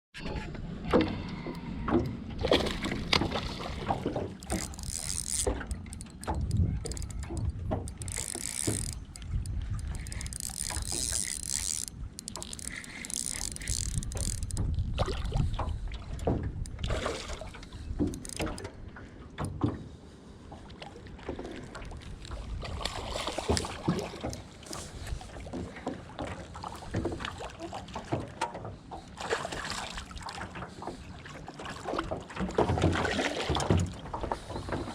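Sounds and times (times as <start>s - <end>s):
rumble of wind and water: 0.2s - 34.9s
knocks in boat: 31.9s - 34.9s.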